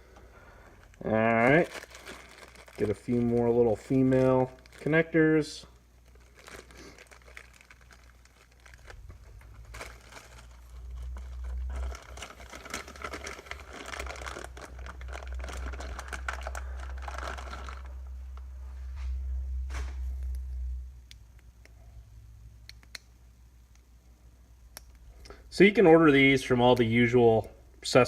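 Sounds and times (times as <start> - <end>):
low hum: 0.0 - 25.4
hands rummaging through metal terminals: 6.1 - 17.9.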